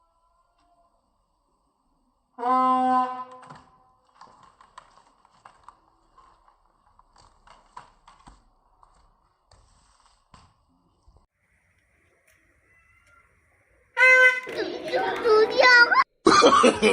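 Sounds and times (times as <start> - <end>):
air horn honk: 2.4 - 3.7, 14.0 - 14.6.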